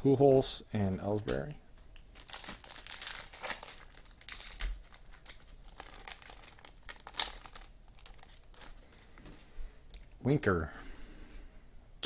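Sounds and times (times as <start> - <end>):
card pack wrappers crinkling: 0.4 - 9.4.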